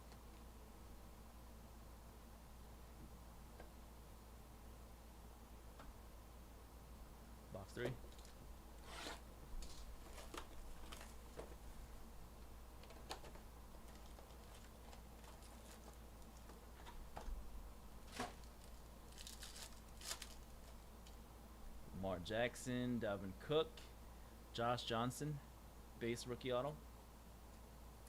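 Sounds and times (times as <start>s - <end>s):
plastic and foil wrappers tearing: 9.0s - 11.3s, 13.8s - 16.0s, 18.1s - 21.2s.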